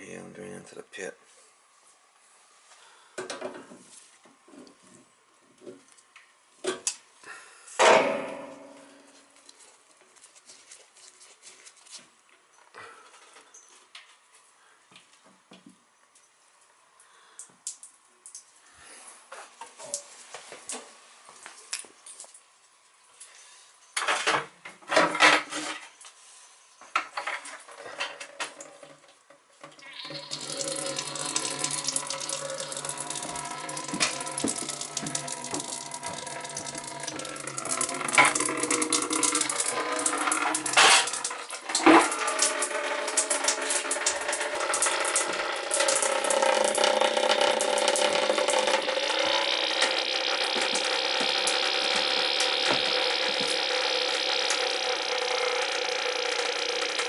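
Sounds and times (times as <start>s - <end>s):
running water: 29.6s - 57.0s
steady hum: 29.8s - 57.0s.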